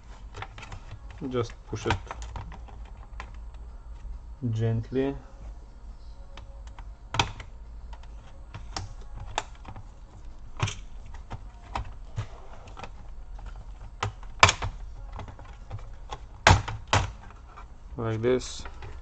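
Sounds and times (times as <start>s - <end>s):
plastic clips clicking loose: 6.4s - 9.8s, 10.6s - 17.3s.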